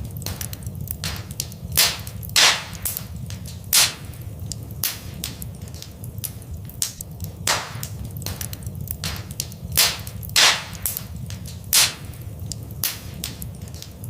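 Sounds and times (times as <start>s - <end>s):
steady low rumble: 0.0s - 14.0s
wood fire crackling: 0.0s - 14.0s.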